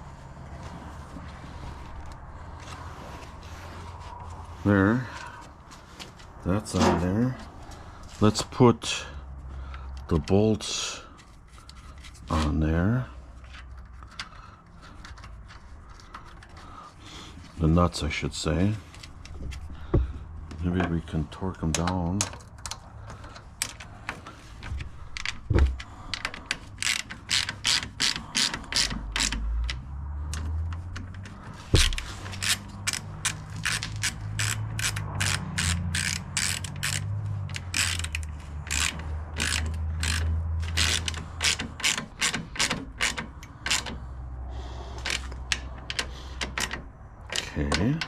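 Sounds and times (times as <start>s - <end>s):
ratchet wrench clicking: 25.1s - 30.5s, 31.8s - 44.1s
sharp knocks: 31.7s - 32.1s.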